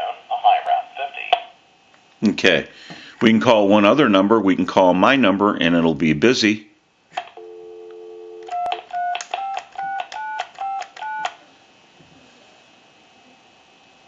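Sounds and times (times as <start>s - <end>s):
telephone dial tone: 7.4s - 11.4s
touch-tone keypad beeps: 8.6s - 11.3s.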